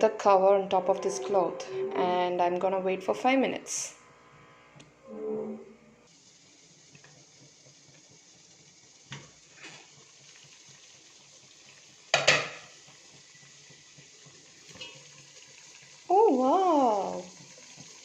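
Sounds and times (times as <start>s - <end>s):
steaming pot hiss: 6.1s - 18.0s
metal cookware clattering: 12.1s - 12.7s.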